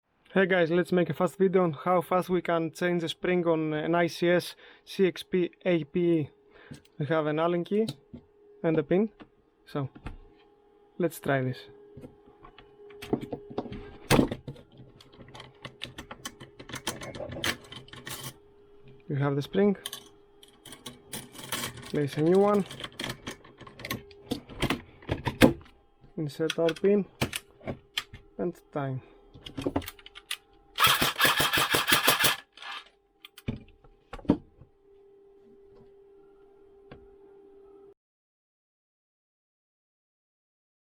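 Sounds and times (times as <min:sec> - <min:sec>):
clicks and knocks of toy gun parts: 0:29.4 - 0:33.6
airsoft gun firing burst: 0:30.8 - 0:32.8.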